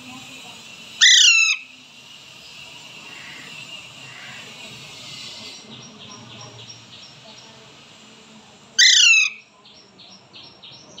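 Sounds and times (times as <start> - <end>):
parakeet chirping: 1.0 - 1.7, 8.8 - 9.5
parakeet squawk: 1.0 - 1.7, 8.8 - 9.5.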